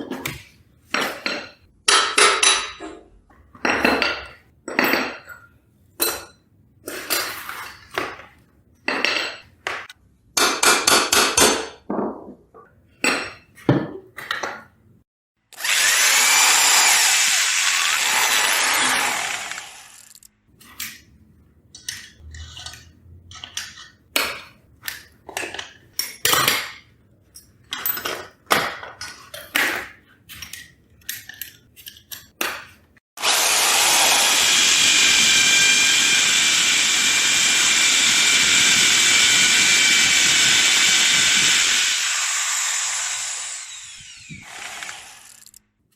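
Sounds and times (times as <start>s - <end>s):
electric drill running: 15.6s - 20.2s, 33.2s - 45.6s
metal parts clinking: 20.0s - 21.0s, 45.2s - 45.6s
clanks of metal tools: 21.7s - 32.4s.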